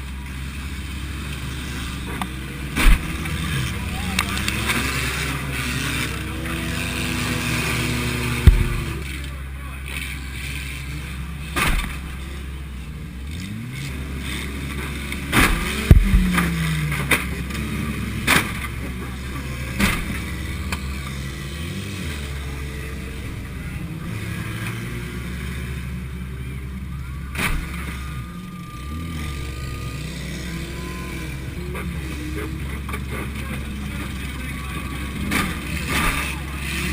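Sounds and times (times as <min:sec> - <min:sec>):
car engine revving: 0:00.0 - 0:36.9
car crashes: 0:02.0 - 0:05.5, 0:07.3 - 0:09.3, 0:11.5 - 0:12.2, 0:14.6 - 0:21.1, 0:27.3 - 0:28.4, 0:31.2 - 0:36.9.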